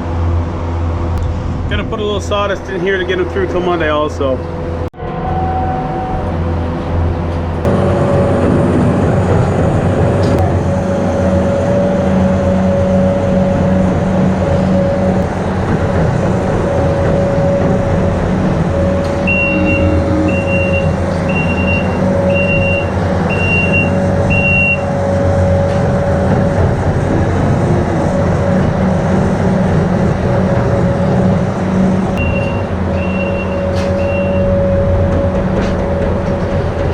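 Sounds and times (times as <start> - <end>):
machine engine running under load: 6.0 - 36.9
reversing alarm beeps: 18.9 - 25.0, 32.2 - 35.0.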